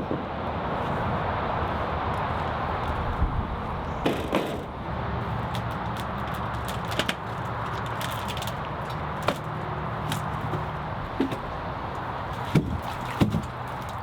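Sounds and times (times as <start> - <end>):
freeway traffic rush: 0.0 - 14.0
timber knocks and cracks: 4.0 - 4.8, 5.4 - 11.6, 12.3 - 14.0.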